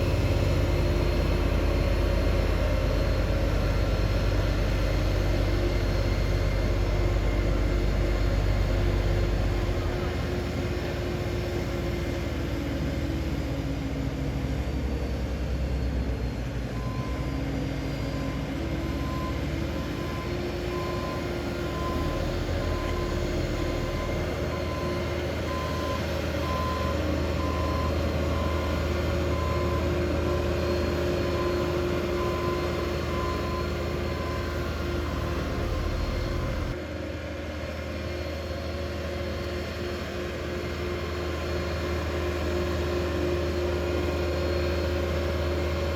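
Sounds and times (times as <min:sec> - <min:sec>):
reversing alarm beeping: 0:00.0 - 0:13.5, 0:15.6 - 0:36.8
paving machinery engines running: 0:00.0 - 0:45.9.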